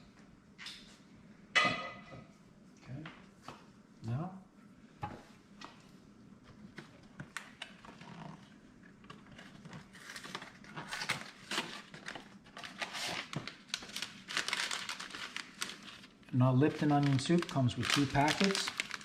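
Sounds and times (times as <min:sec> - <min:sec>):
foil paper packets crinkling: 0:09.1 - 0:19.0.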